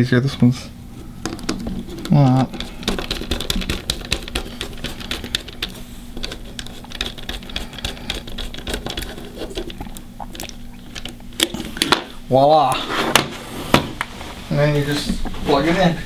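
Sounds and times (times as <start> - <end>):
screwdriver clicking and tapping: 1.2 - 9.7.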